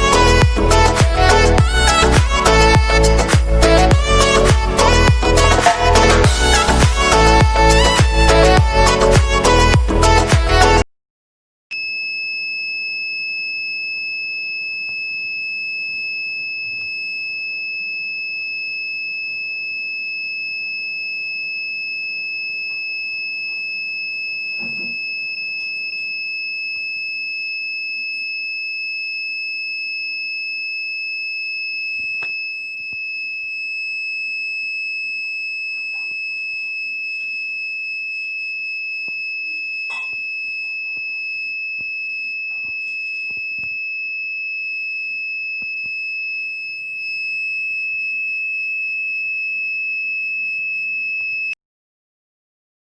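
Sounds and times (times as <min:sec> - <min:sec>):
high-pitched electronic tone: 0:00.0 - 0:10.8, 0:39.4 - 0:41.3.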